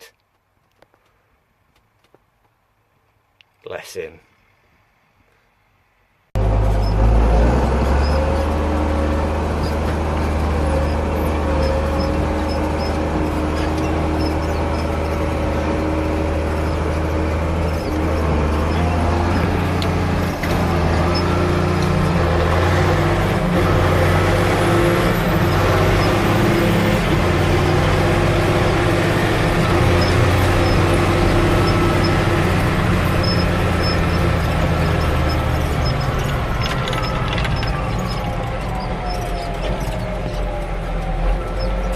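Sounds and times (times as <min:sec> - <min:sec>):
tractor diesel engine running: 0:06.4 - 0:41.9.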